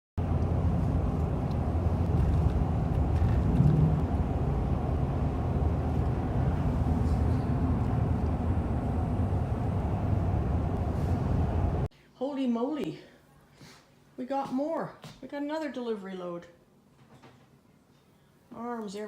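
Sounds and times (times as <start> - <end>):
vehicle engine and road noise: 0.2 - 11.9.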